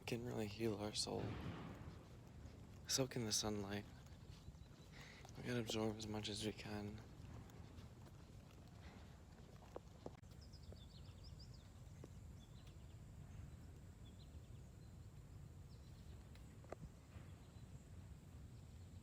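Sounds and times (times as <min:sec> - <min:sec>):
low background noise: 0:00.0 - 0:19.0
bird chirping: 0:00.2 - 0:07.1, 0:10.2 - 0:16.3.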